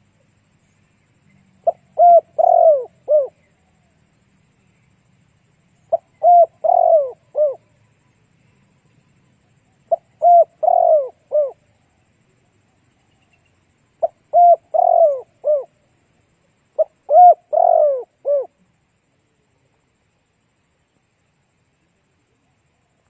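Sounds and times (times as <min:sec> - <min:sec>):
dove cooing: 0:01.6 - 0:03.5, 0:05.9 - 0:07.7, 0:09.9 - 0:11.6, 0:14.0 - 0:15.8, 0:16.8 - 0:18.6.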